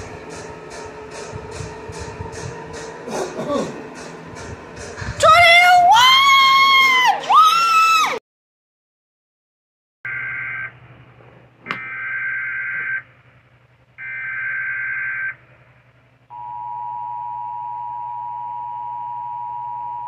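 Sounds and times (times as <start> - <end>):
low hum: 0.0 - 6.6.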